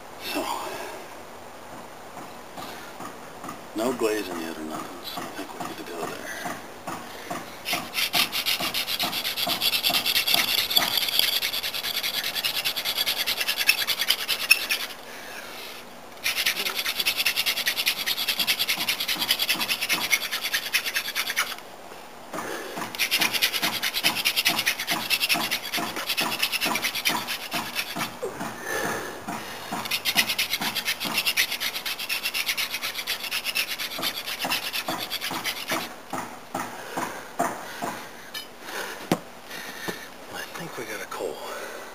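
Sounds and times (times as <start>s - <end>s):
wooden spindle grinding on board: 7.3s - 15.0s, 16.2s - 21.6s, 22.8s - 36.0s.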